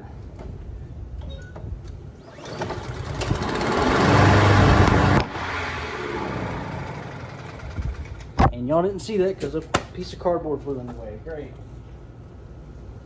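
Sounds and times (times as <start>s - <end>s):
lawn mower engine running: 2.2s - 8.3s.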